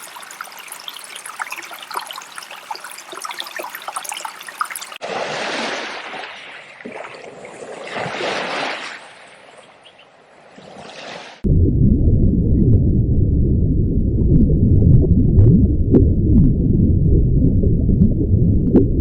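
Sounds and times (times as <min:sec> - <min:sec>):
rushing water: 0:00.0 - 0:11.4
water trickling and splashing: 0:00.0 - 0:11.4.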